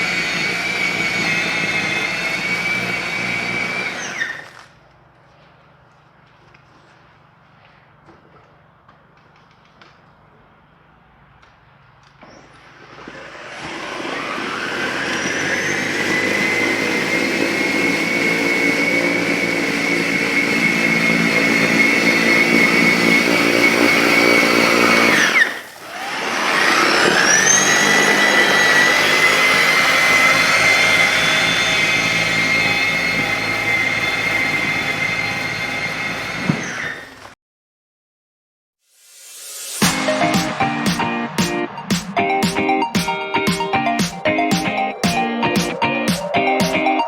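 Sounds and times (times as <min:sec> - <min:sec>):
electric snow blower motor whine: 0:00.0 - 0:05.4, 0:12.4 - 0:37.4.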